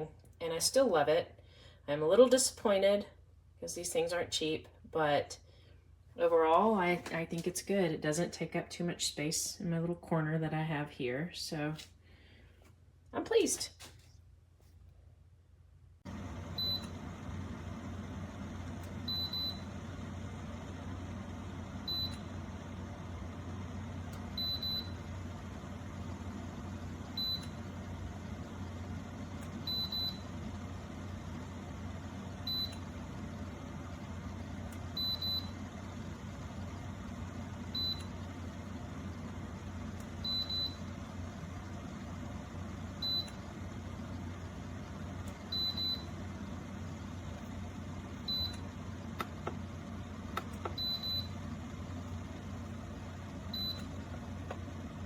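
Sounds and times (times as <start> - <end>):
steady low hum: 14.3 - 55.0.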